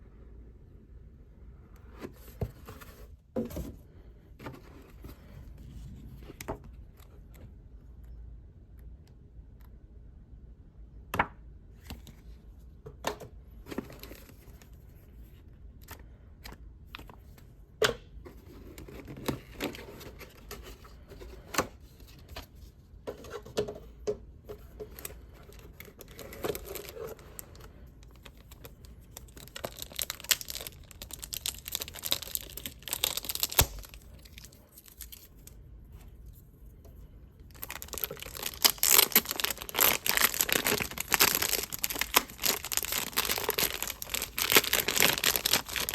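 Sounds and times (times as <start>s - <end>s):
packaging crinkling and tearing: 24.8s - 35.5s, 37.5s - 45.9s.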